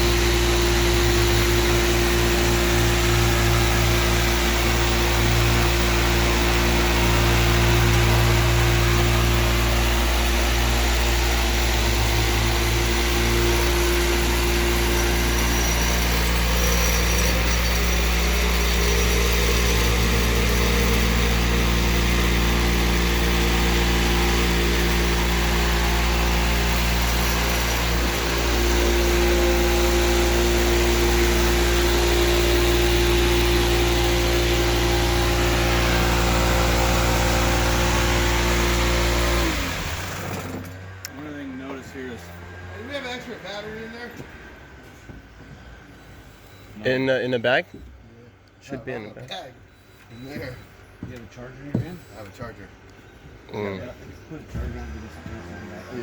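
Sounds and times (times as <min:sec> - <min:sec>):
electric floor sander running: 0:00.0 - 0:44.2.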